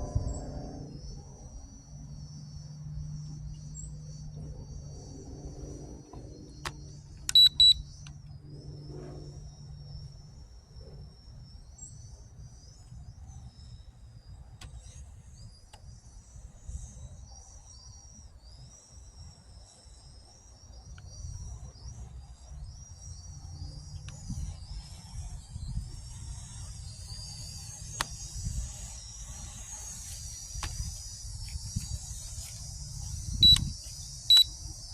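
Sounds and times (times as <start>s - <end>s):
crickets trilling: 0.0s - 34.9s
low steady hum: 0.0s - 34.9s
high electronic beeps: 7.3s - 7.8s, 33.4s - 33.7s, 34.3s - 34.6s.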